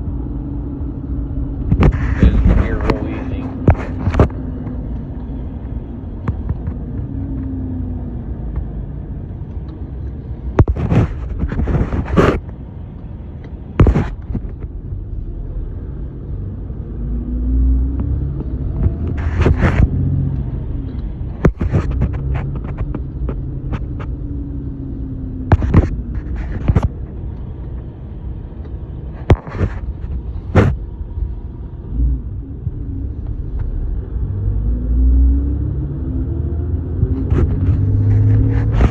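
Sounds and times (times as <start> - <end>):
diesel truck engine: 0.0 - 38.9
sharp knocks and clatters: 10.5 - 12.6, 13.7 - 14.7, 20.9 - 24.2, 25.4 - 27.9, 29.2 - 30.8.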